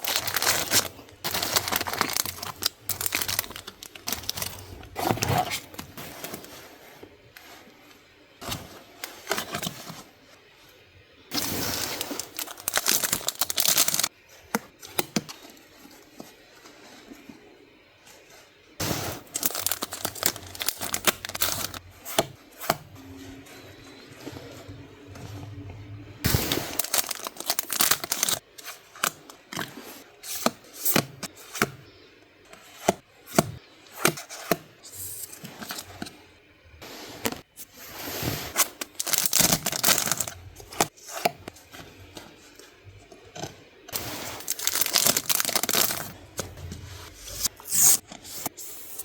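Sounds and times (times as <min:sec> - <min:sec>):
packaging rustling and tearing: 0:00.0 - 0:06.5, 0:11.3 - 0:14.1, 0:18.9 - 0:21.8, 0:26.3 - 0:29.2, 0:38.5 - 0:40.9, 0:44.0 - 0:46.2.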